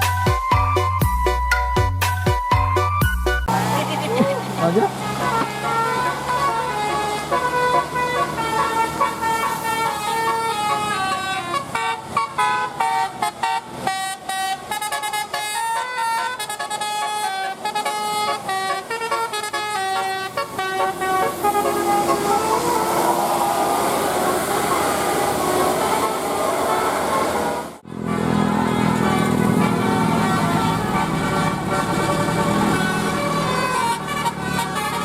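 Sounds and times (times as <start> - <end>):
multi-tone bus horn melody: 0.0 - 35.0.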